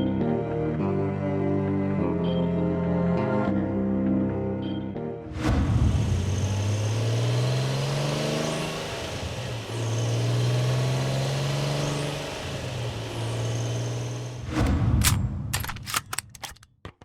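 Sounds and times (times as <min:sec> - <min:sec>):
sports car engine revving: 0:05.7 - 0:14.6.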